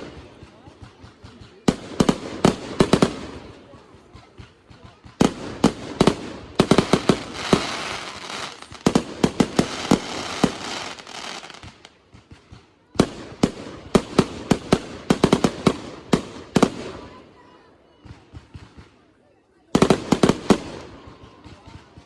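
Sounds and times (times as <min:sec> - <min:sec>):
fireworks bangs: 0:00.0 - 0:17.2, 0:19.7 - 0:22.0.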